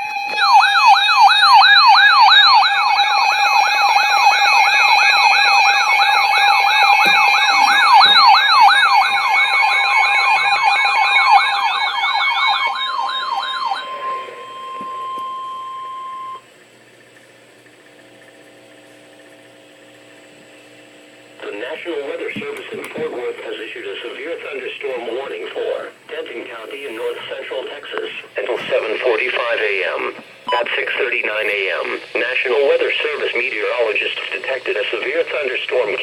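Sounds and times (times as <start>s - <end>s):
electronic siren sweeping up and down: 0.0s - 16.4s
steady alert tone: 0.0s - 16.4s
faint hum: 4.8s - 36.0s.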